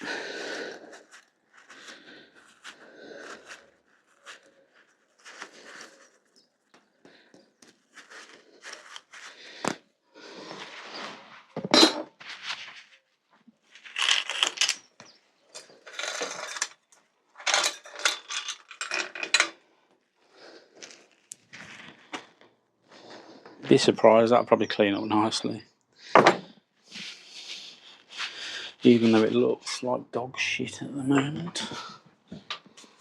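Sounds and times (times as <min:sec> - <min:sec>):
bicycle chain clinking and rattling: 0:15.5 - 0:16.8, 0:17.4 - 0:19.6.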